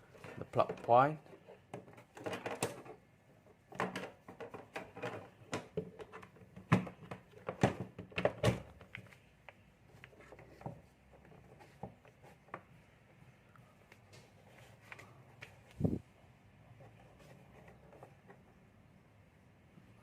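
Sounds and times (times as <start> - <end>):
clicks and knocks from handling wiring: 0.2 - 3.0, 3.7 - 12.7.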